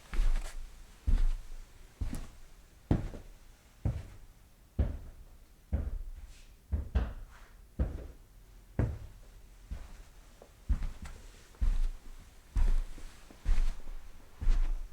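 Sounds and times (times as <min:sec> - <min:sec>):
footsteps with heel strikes: 0:02.0 - 0:03.3, 0:03.9 - 0:04.2, 0:04.8 - 0:08.2, 0:08.8 - 0:10.1, 0:10.7 - 0:14.9.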